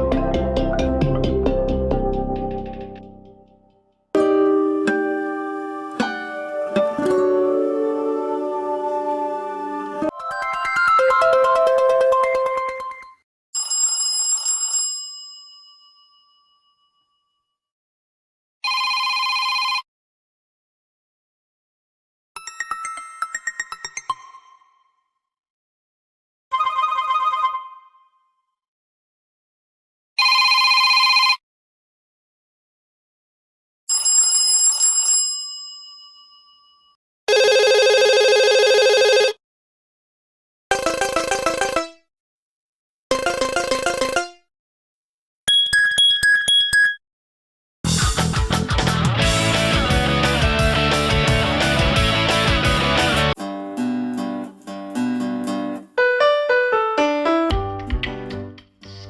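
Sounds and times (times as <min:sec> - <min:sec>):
high tone chord alert: 0:04.2 - 0:13.1, 0:56.0 - 0:58.3
electronic ringing trill: 0:10.1 - 0:13.2
bell-like phone chime: 0:10.1 - 0:17.2, 0:33.9 - 0:39.4, 0:45.5 - 0:47.0
phone chime: 0:45.5 - 0:47.0.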